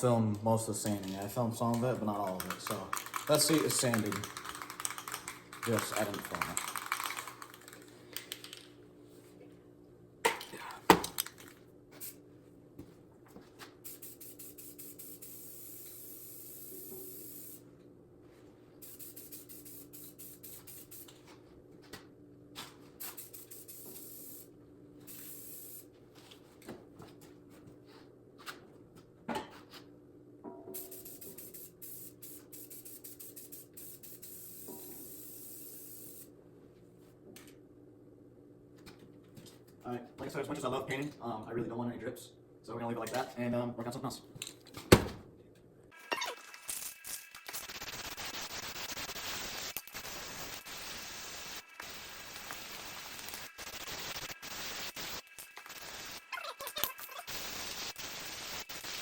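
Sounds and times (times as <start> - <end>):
spray paint hissing: 1.0 - 7.8, 12.0 - 12.2, 13.8 - 17.6, 18.8 - 21.2, 23.0 - 24.5, 25.1 - 25.9, 30.8 - 36.3, 46.1 - 59.0.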